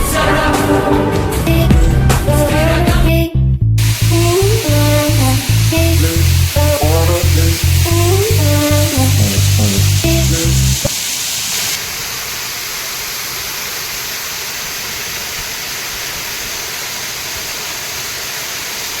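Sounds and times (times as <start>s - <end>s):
waterfall rushing: 3.8s - 19.0s.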